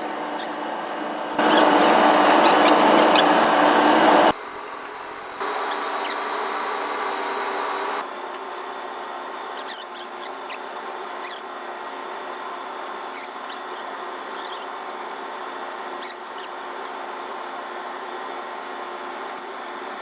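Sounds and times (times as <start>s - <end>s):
short high squeaks: 0.0s - 0.6s, 1.4s - 4.3s, 5.6s - 6.3s
machinery hum: 0.0s - 20.0s.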